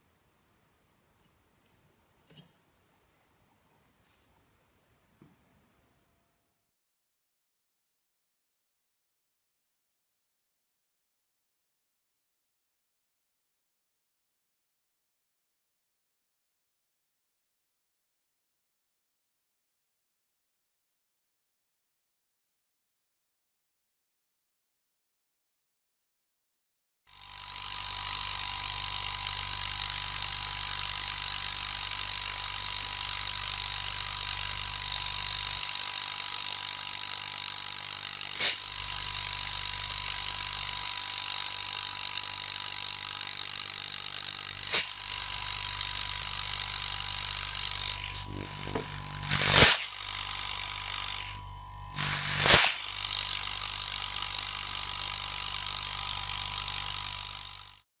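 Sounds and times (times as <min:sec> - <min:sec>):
refrigerator compressor humming: 0:27.5 - 0:57.6.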